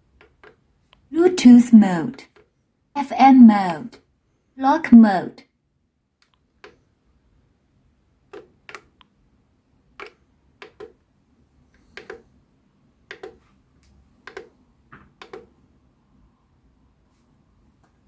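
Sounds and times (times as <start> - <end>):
plastic buttons clicking: 0.2 - 1.0, 6.2 - 6.9, 8.3 - 9.1, 10.0 - 11.0, 11.7 - 12.3, 13.1 - 15.5.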